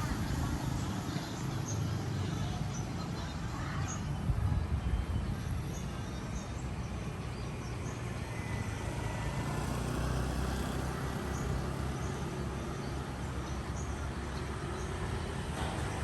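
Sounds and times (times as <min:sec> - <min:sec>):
low rumble of traffic: 0:00.0 - 0:16.0
vehicle passing: 0:08.2 - 0:13.5.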